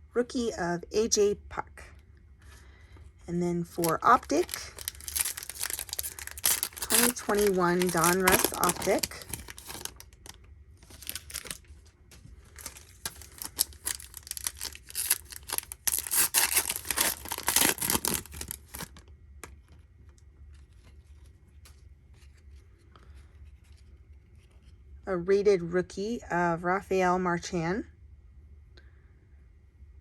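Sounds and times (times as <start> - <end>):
wrapper tearing and crinkling: 3.7 - 19.0.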